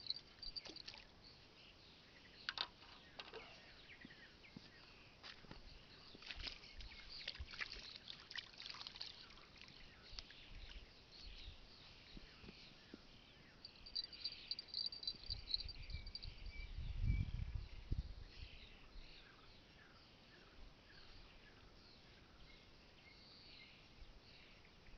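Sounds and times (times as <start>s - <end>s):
bird trill: 0.0s - 1.0s, 13.6s - 16.8s
small birds chirping: 0.0s - 24.9s
wind rumble on microphone: 15.1s - 19.3s.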